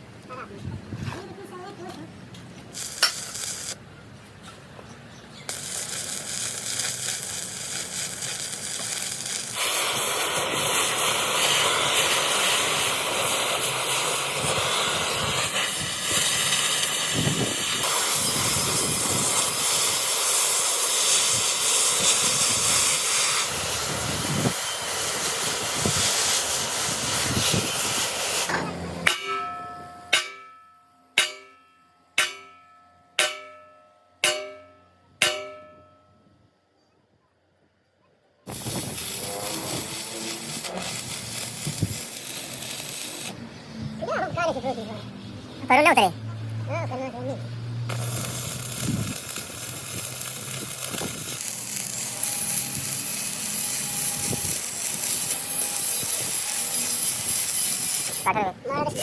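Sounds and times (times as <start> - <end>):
compressed air hissing: 5.5 - 28.5, 38.5 - 43.4
short ringing strikes: 29.0 - 36.4.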